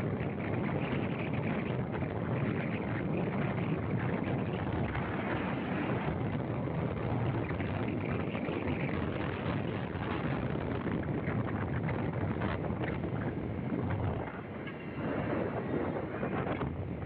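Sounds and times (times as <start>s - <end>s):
rushing wind: 0.0s - 17.0s
vehicle road noise: 1.2s - 17.0s.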